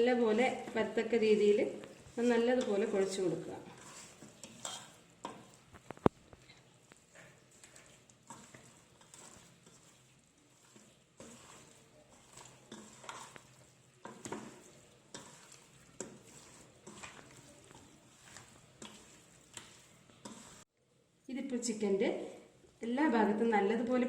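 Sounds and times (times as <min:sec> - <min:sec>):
hands squishing raw meat: 0:03.7 - 0:20.6.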